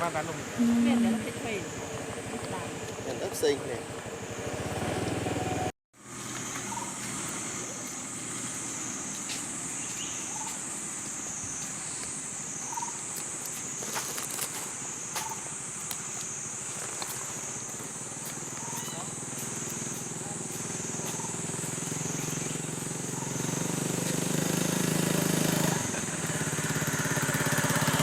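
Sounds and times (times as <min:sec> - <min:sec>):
insect chorus drone: 0:00.0 - 0:28.0
faint chirping calls: 0:06.5 - 0:08.0, 0:08.7 - 0:23.8.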